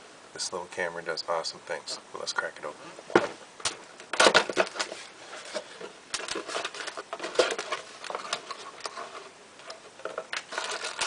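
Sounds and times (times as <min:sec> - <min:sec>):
packaging rustling and crinkling: 0:03.1 - 0:11.0.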